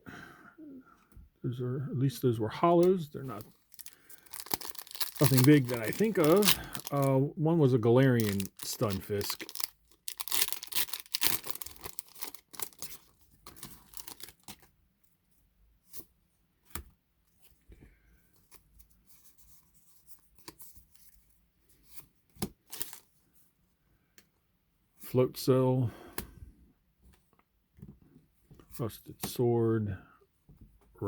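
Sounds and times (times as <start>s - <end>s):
foil wrapper tearing and crinkling: 3.7s - 7.1s, 8.1s - 14.6s, 22.7s - 23.0s.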